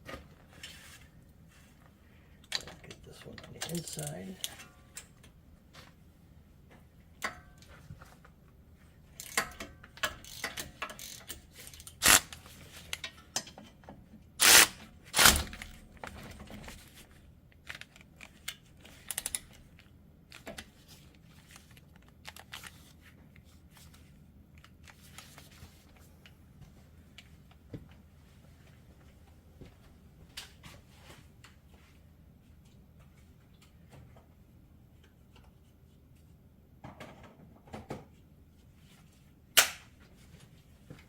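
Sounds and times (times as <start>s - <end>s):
wrench clicking against steel: 10.2s - 12.4s.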